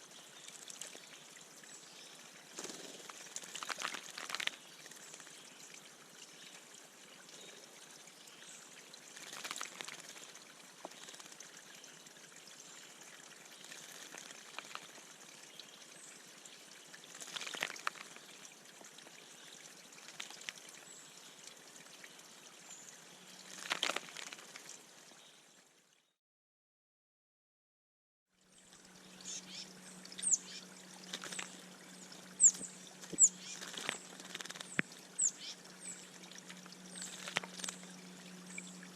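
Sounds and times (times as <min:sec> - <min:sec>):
water trickling and splashing: 0:00.0 - 0:26.2, 0:28.3 - 0:38.9
low steady hum: 0:28.4 - 0:38.9
bird chirps: 0:32.4 - 0:36.0.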